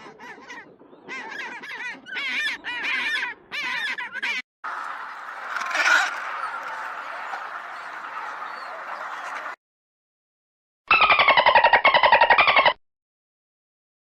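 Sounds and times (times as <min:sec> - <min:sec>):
waterfowl honking: 0:04.7 - 0:09.6.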